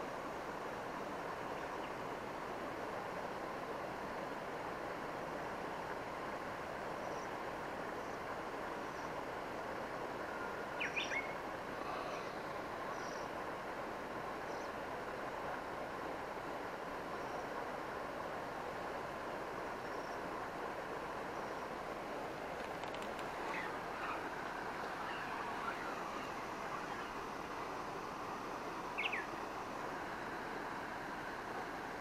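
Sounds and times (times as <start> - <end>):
outdoor background noise: 0.0 - 32.0
small bird chirping: 29.0 - 29.3.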